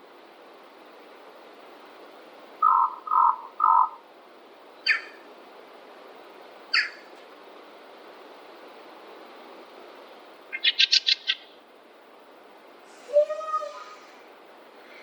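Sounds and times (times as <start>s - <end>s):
steady background hiss: 0.0s - 15.0s
birds calling: 2.6s - 4.0s, 4.8s - 5.2s, 6.7s - 7.1s, 13.0s - 14.2s.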